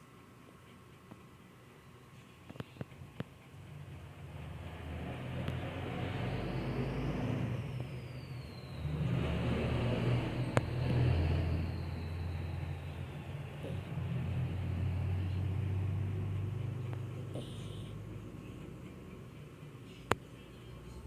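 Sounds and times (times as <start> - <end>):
dog snoring: 13.5 - 18.6.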